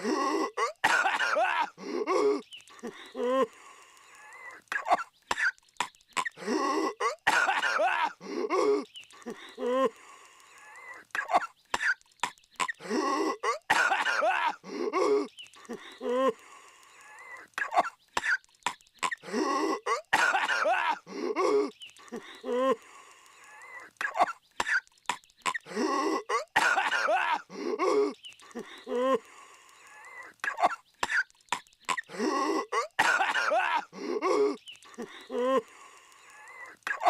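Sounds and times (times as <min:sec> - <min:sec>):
cartoon voice coughing and choking: 0:00.0 - 0:03.4, 0:04.7 - 0:05.6, 0:06.2 - 0:09.9, 0:11.1 - 0:12.0, 0:12.6 - 0:15.3, 0:17.6 - 0:18.4, 0:19.0 - 0:21.7, 0:24.0 - 0:29.2, 0:30.4 - 0:35.6.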